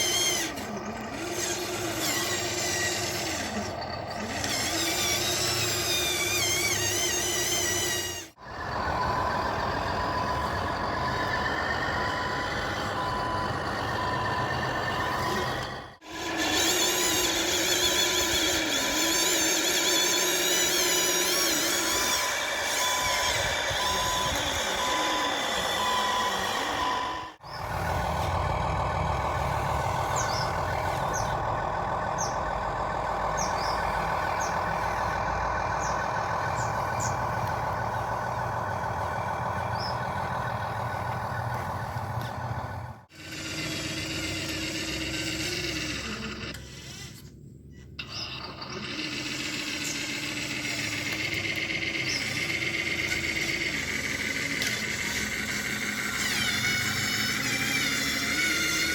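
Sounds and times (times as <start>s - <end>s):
simulated truck engine: 0.0s - 58.9s
reversing beeper: 8.5s - 16.0s, 22.0s - 43.0s.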